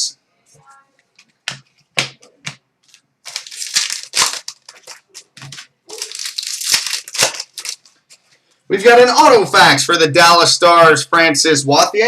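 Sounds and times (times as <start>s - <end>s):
plastic wrapper crinkling and tearing: 2.8s - 8.2s.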